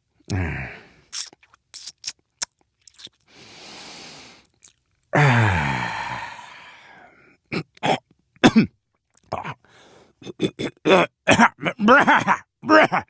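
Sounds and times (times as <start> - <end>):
loud groaning sigh: 0.3 - 1.0, 5.2 - 7.0
mouth clicks and lip smacks: 1.1 - 3.3, 4.4 - 5.0
breathy exhale: 3.3 - 4.4, 5.3 - 7.3, 9.7 - 10.2.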